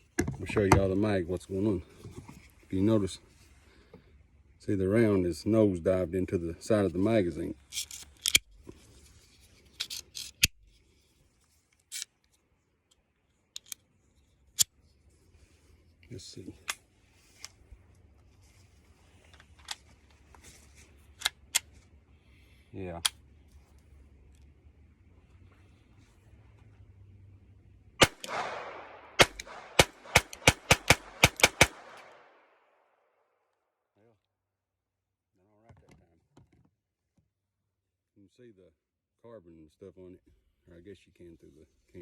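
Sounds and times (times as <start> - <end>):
pistol magazine clicks: 28.0 - 32.3.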